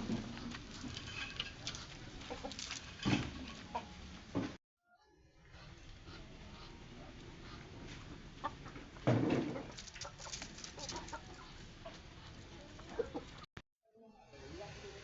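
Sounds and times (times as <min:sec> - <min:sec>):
chickens clucking: 0:00.0 - 0:04.1, 0:05.6 - 0:13.5.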